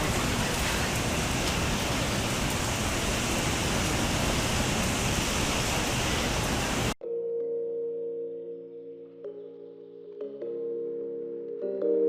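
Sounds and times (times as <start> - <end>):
heavy rain hissing: 0.0 - 7.0
soft music with bell-like tones: 7.0 - 12.0.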